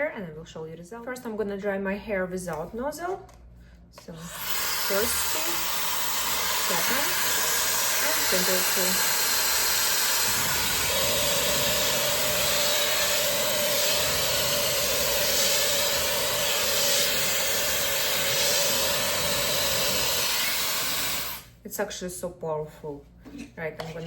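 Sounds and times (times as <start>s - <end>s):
hair dryer air rush: 4.2s - 21.6s
hair dryer whine: 4.2s - 21.6s.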